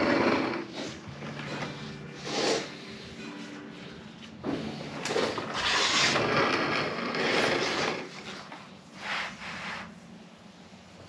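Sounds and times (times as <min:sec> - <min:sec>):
wipe rubbing on fiberglass: 0:08.2 - 0:10.3.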